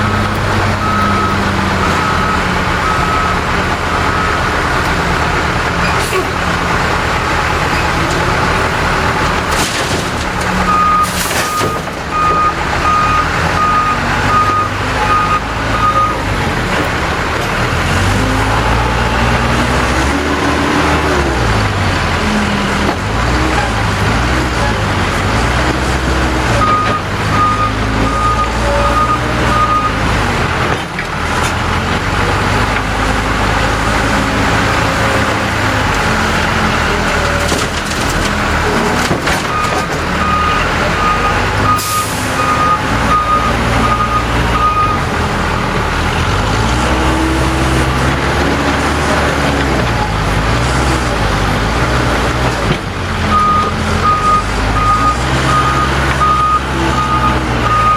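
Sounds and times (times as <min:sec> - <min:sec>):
reversing alarm beeping: 0:00.0 - 0:04.5, 0:10.7 - 0:16.2, 0:39.5 - 0:45.0, 0:53.3 - 0:57.9
diesel engine under load: 0:00.0 - 0:57.9.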